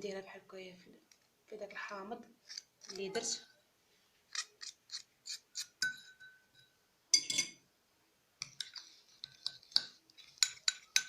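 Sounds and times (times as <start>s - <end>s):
metal spoon clinking against glass: 5.6s - 7.6s, 8.5s - 11.0s.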